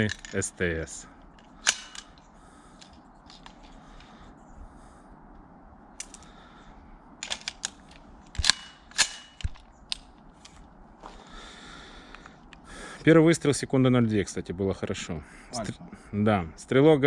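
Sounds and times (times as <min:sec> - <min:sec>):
sharp gunshots: 0:08.4 - 0:09.6.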